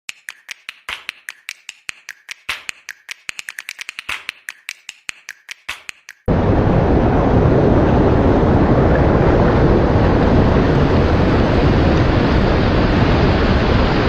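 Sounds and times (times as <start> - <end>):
rapid ringing clicks: 0.0 - 6.3.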